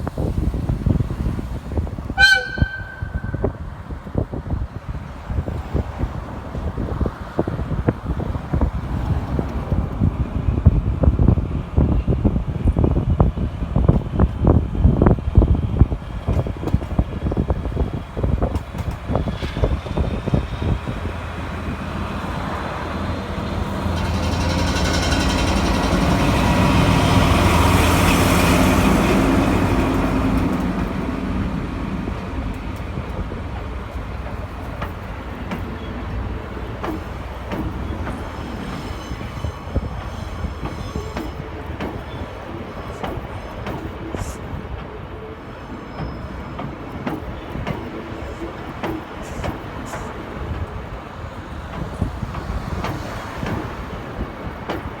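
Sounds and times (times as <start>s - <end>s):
locomotive engine: 0.0s - 10.5s, 14.4s - 55.0s
rail noise: 0.0s - 55.0s
wind buffeting microphone: 0.0s - 55.0s
high wheel squeal: 2.1s - 3.7s, 23.6s - 28.2s, 35.6s - 44.6s, 45.2s - 47.5s.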